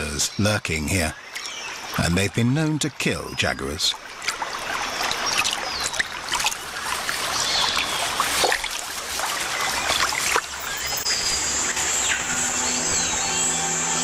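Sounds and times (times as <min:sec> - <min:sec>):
water splashing and sloshing: 0:01.0 - 0:13.0.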